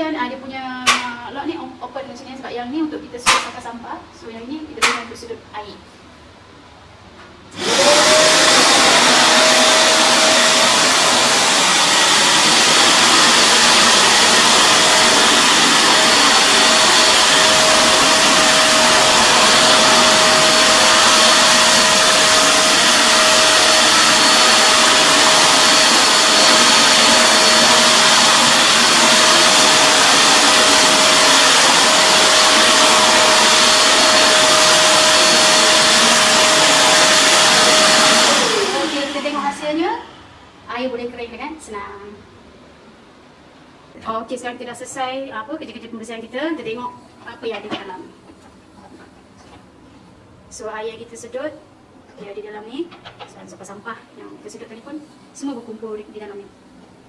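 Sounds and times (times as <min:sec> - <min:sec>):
wet dry vacuum cleaner whining: 0:07.5 - 0:40.6.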